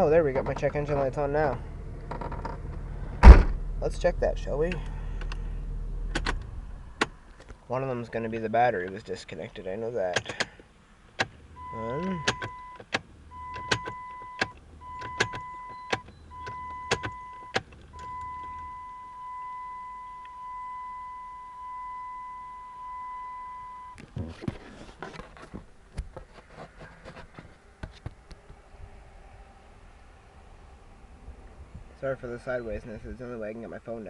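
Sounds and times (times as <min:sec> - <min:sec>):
ignition key clicking: 0:12.0 - 0:18.7
dash warning chime: 0:13.4 - 0:24.0.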